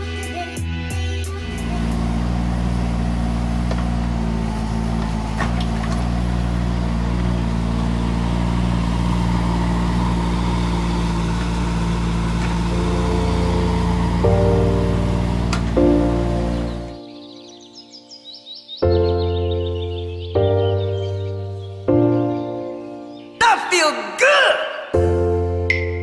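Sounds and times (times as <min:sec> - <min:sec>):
heavy diesel engine running: 0:00.0 - 0:17.0
higher steady tones: 0:12.7 - 0:16.5.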